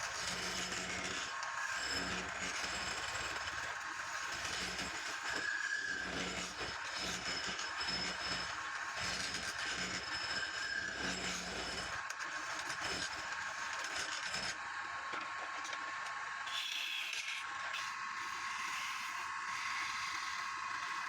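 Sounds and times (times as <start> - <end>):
lathe tool cutting wood: 0.0 - 14.6, 17.8 - 21.0
lathe motor hum: 17.8 - 21.0.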